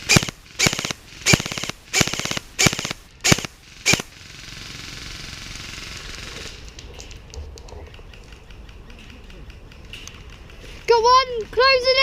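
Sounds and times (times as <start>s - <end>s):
airsoft gun full-auto bursts: 0.0s - 6.7s.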